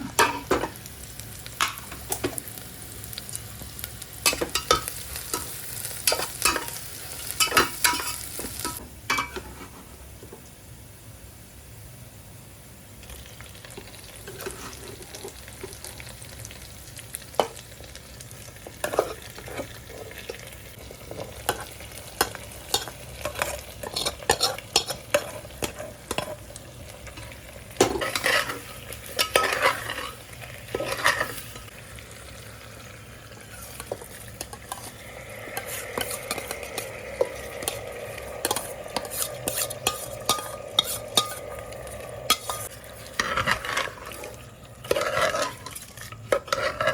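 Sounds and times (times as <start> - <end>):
food frying in a pot: 0.0 - 46.9
spoon scraping a pot: 18.8 - 20.4, 21.1 - 26.4, 27.1 - 31.6, 33.4 - 41.7, 42.3 - 46.9.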